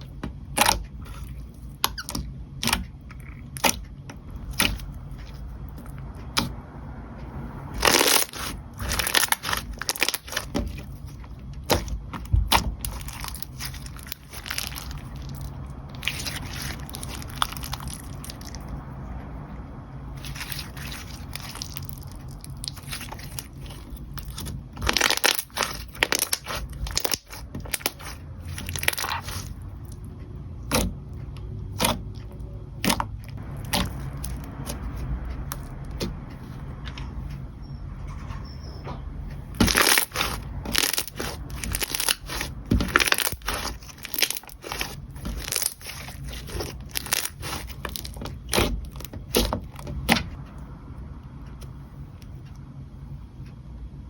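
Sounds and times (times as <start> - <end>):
slime squished by hand: 0.5 - 6.6, 7.7 - 19.0, 20.1 - 30.0, 30.6 - 31.0, 32.8 - 36.6, 39.5 - 50.3.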